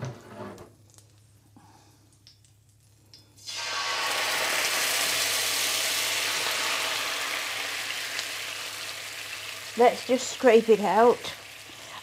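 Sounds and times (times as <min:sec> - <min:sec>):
liquid sizzling in hot oil: 0:02.4 - 0:12.0.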